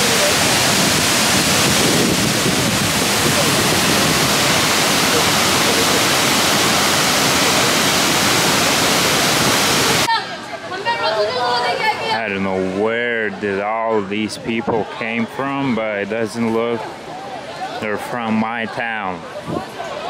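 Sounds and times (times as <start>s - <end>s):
faint voices: 0.0s - 8.5s, 10.0s - 20.0s
waterfall rushing: 0.0s - 10.1s.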